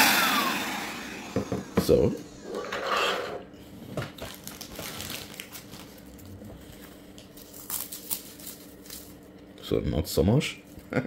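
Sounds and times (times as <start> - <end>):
rustling crinkling handling noise: 4.0 - 9.3.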